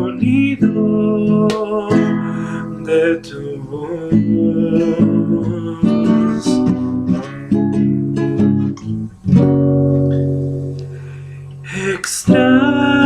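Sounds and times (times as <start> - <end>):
acoustic guitar strumming: 0.0 - 13.0
breathy hiss: 2.0 - 3.0, 10.3 - 12.4.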